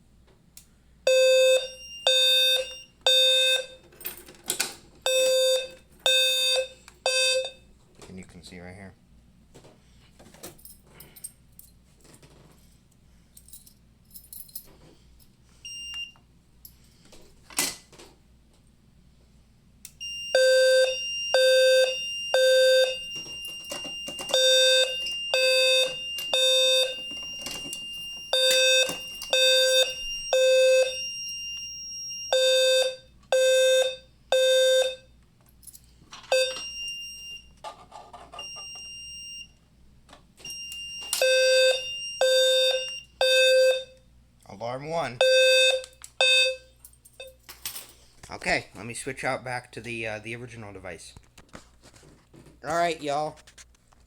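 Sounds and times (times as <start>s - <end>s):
fire alarm horn blasts: 1.1s - 3.8s, 5.0s - 7.6s, 20.0s - 35.1s, 36.3s - 37.5s, 40.4s - 44.0s, 45.2s - 46.8s.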